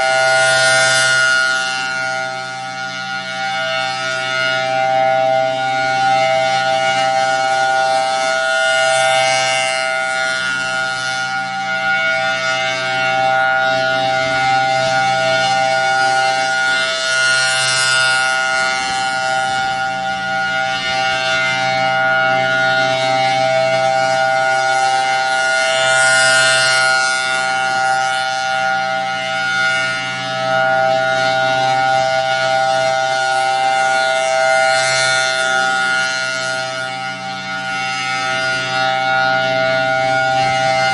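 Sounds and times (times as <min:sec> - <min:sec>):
outdoor warning siren wailing: 0:00.0 - 0:40.9.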